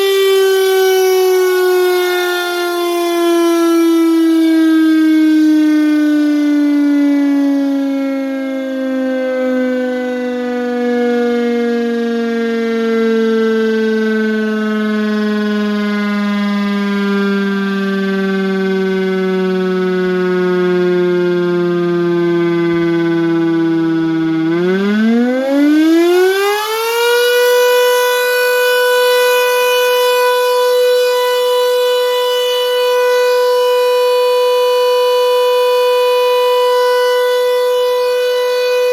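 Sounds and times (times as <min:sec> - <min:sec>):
siren wailing: 0:00.0 - 0:38.9.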